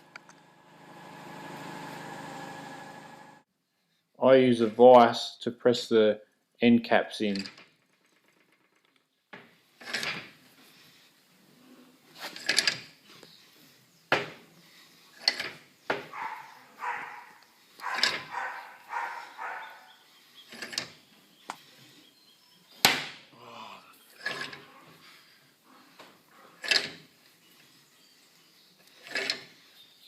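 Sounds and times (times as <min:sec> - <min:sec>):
bench vise handle scraping turns: 0:09.8 - 0:10.3, 0:12.1 - 0:13.0, 0:15.1 - 0:16.9, 0:17.8 - 0:19.4, 0:20.4 - 0:21.7, 0:24.2 - 0:25.2, 0:26.5 - 0:27.8, 0:28.8 - 0:29.7.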